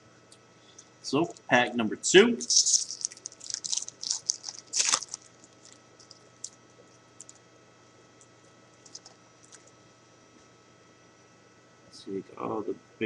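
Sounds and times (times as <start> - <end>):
card pack crinkling and clicking: 2.4 - 7.4, 8.8 - 9.7.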